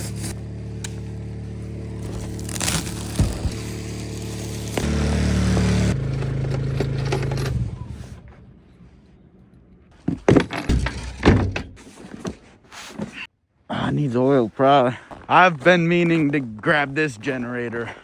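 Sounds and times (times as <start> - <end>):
sharp knocks and clatters: 10.0 - 12.4.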